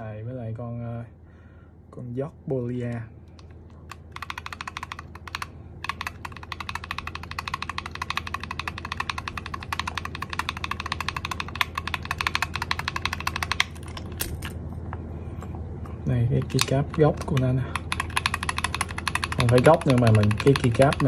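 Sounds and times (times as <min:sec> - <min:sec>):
typing on mechanical keyboard: 0:03.3 - 0:14.3, 0:16.3 - 0:21.0.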